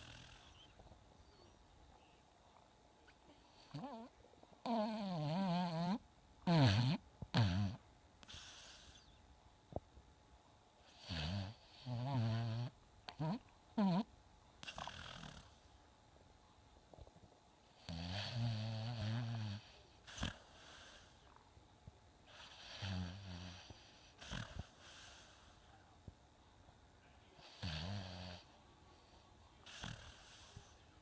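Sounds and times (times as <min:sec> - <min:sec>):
low buzzing snores: 0:00.0 - 0:00.8, 0:03.5 - 0:09.1, 0:10.9 - 0:15.7, 0:17.7 - 0:21.3, 0:22.3 - 0:25.6, 0:27.4 - 0:28.5, 0:29.6 - 0:30.8.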